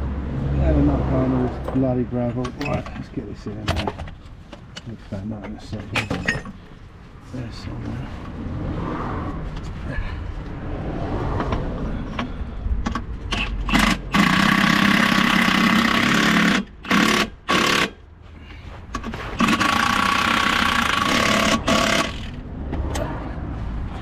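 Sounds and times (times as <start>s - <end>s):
impact wrench running: 13.3s - 18.0s, 19.0s - 22.4s.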